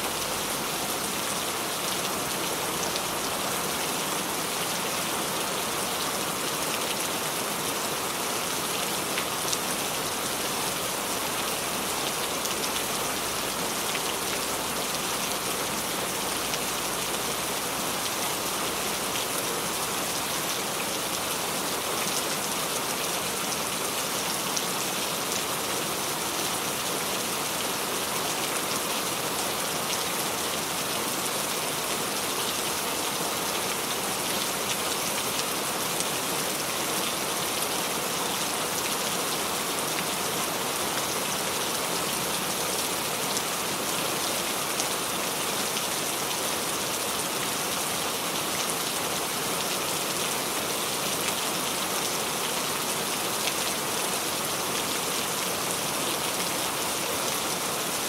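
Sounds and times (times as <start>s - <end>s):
rain patter on a surface: 0.0s - 58.0s.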